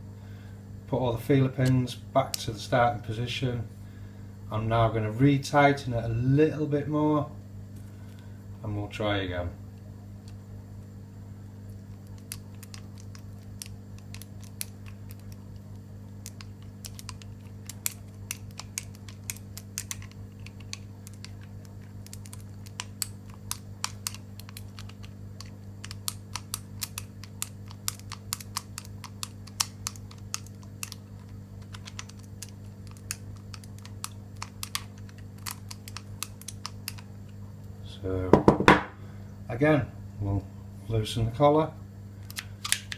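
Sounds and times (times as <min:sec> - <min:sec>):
steady low hum: 0:00.0 - 0:42.9.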